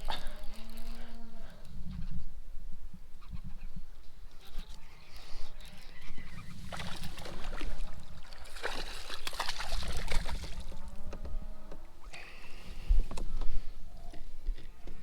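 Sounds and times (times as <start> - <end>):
fish thrashing in water: 6.4 - 10.8
water splashing: 6.4 - 10.9.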